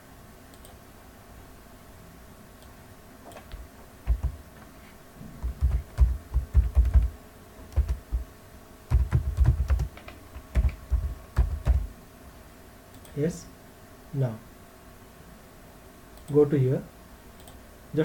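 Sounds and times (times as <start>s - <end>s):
typing on computer keyboard: 3.3s - 4.4s, 5.4s - 7.1s, 7.7s - 8.2s, 8.9s - 11.9s.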